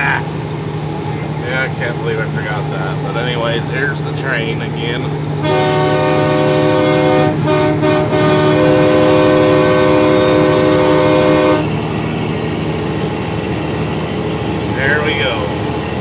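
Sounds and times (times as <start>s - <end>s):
truck engine droning: 0.0s - 16.0s
train horn chord: 5.4s - 11.8s.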